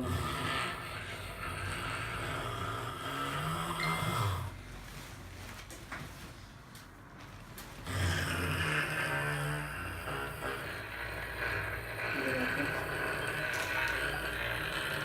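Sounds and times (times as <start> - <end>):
person snoring: 0.0 - 4.6, 7.8 - 15.0.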